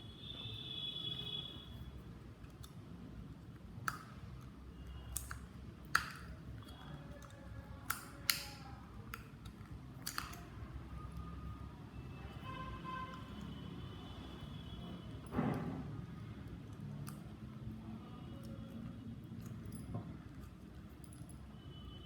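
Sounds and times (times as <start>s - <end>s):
sharp plastic clicks: 3.6s - 11.3s.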